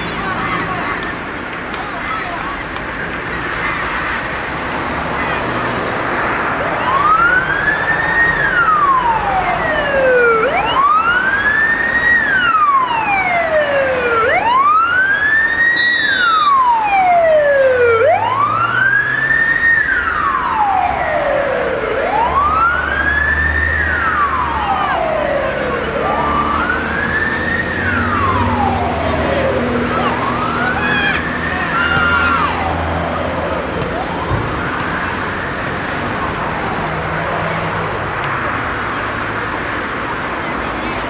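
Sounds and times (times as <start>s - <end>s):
siren wailing: 6.4s - 37.4s.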